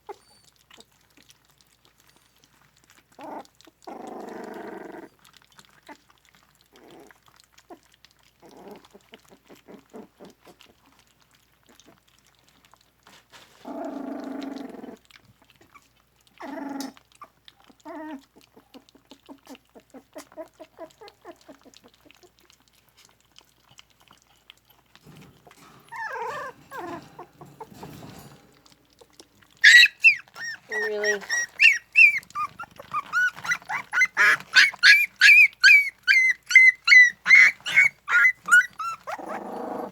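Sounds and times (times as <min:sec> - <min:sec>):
puppies whimpering and squealing: 0:00.0 - 0:01.0, 0:16.4 - 0:22.5, 0:24.8 - 0:39.9
puppies eating wet smacking: 0:00.0 - 0:39.9.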